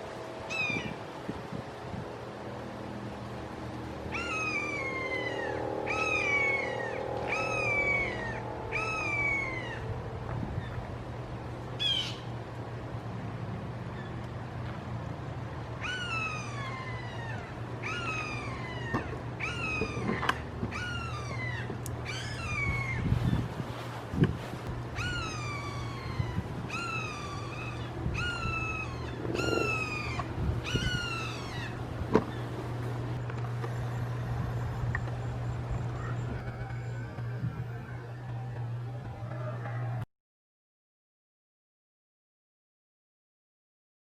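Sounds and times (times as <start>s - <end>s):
hawks screaming: 0.4s - 1.1s, 4.0s - 10.8s, 11.8s - 12.3s, 15.8s - 23.4s, 24.9s - 34.7s, 35.7s - 38.3s.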